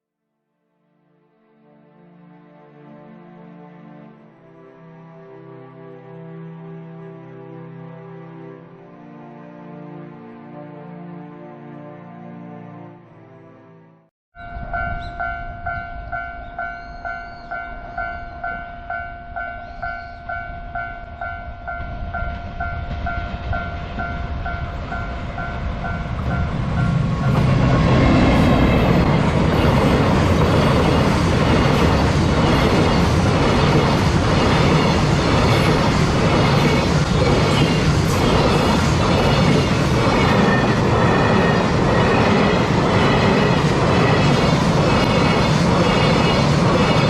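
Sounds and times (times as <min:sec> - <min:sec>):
freight train rumbling over rails: 0:14.4 - 0:47.0.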